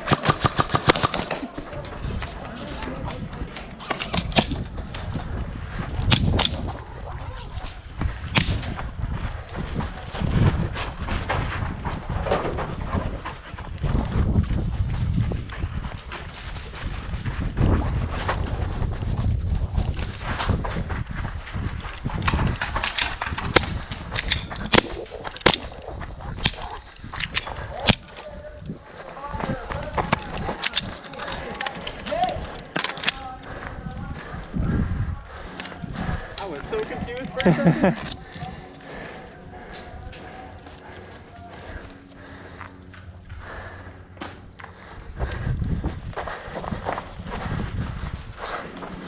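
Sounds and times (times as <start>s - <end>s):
airsoft gunfire snaps: 0.0s - 1.5s, 23.5s - 23.9s, 24.7s - 25.8s.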